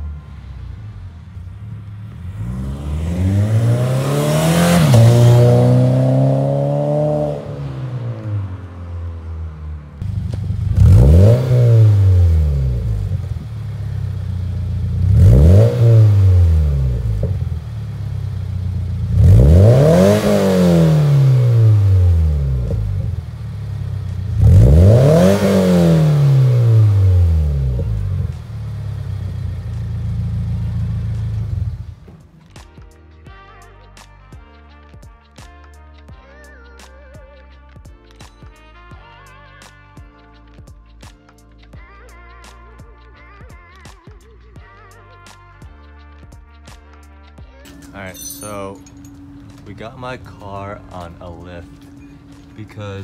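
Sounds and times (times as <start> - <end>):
car engine revving: 0.0 - 32.2, 47.7 - 53.0.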